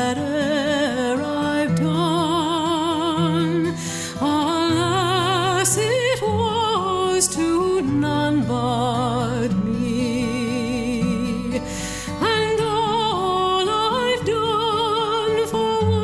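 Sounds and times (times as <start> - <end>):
slow song with singing voice: 0.0 - 16.0.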